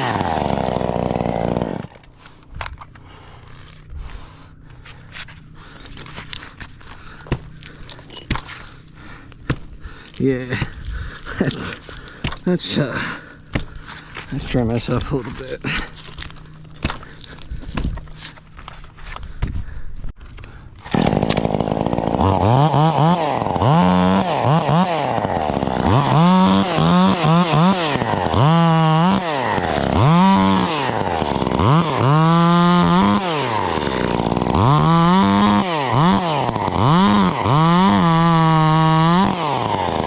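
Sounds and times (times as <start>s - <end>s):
chainsaw revving in bursts: 0.0s - 2.0s, 20.8s - 40.0s.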